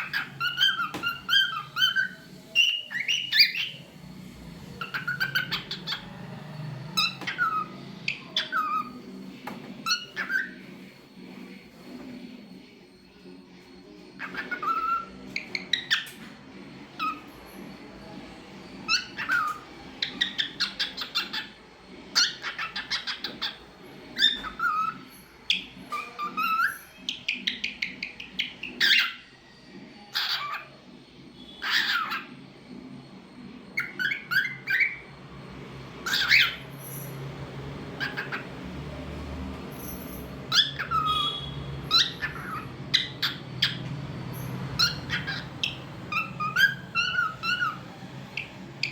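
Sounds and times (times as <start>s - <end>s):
cockatiel chirping and whistling: 0.0s - 3.8s, 4.8s - 6.1s, 7.0s - 9.0s, 9.8s - 10.6s, 14.2s - 16.2s, 17.0s - 17.3s, 18.8s - 21.5s, 22.1s - 23.6s, 24.2s - 29.2s, 30.1s - 30.6s, 31.5s - 32.3s, 33.8s - 35.1s, 36.0s - 37.1s, 38.0s - 38.4s, 39.9s - 48.9s.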